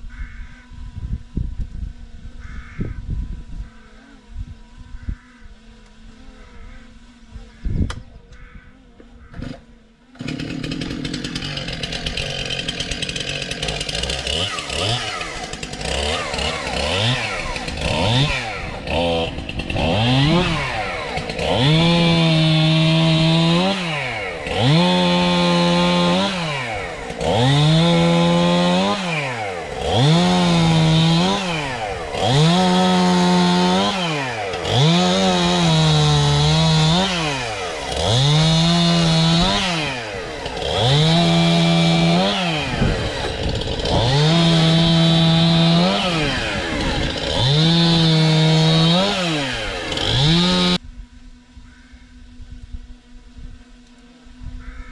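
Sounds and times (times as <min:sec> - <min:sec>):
chainsaw revving: 0:09.2 - 0:50.8.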